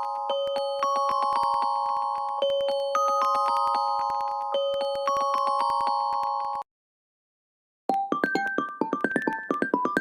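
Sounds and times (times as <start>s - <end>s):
chime ringtone melody: 0.0s - 6.6s
piano-like ringtone notes: 0.0s - 6.6s.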